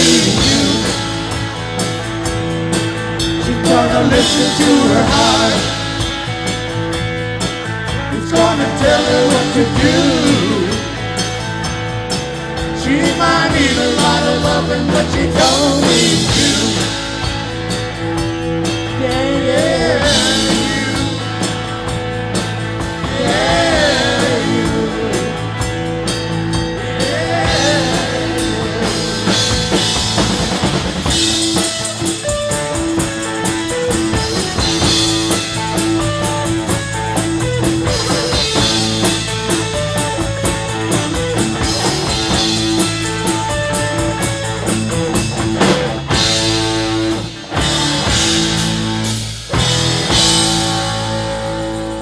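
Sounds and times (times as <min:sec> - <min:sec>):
rock band playing: 0:00.0 - 0:52.0.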